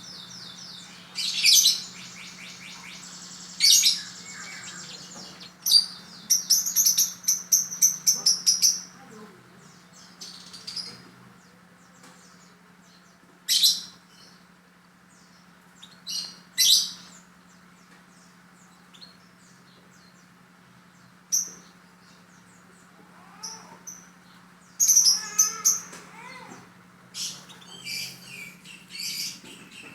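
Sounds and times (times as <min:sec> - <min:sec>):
lovebird chirping: 0:00.0 - 0:11.0, 0:23.2 - 0:26.6, 0:27.2 - 0:29.9
steady low hum: 0:00.0 - 0:29.9.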